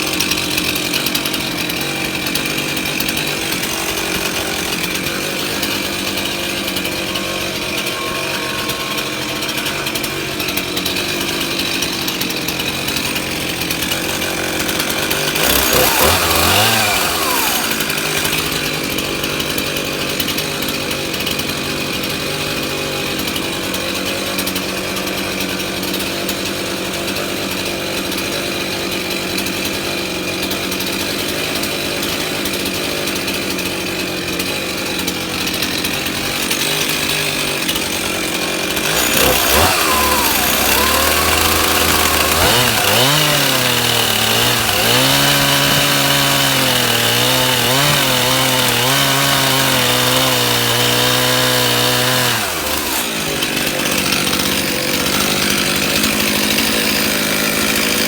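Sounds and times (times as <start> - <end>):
chainsaw cutting log: 0.0 - 58.0.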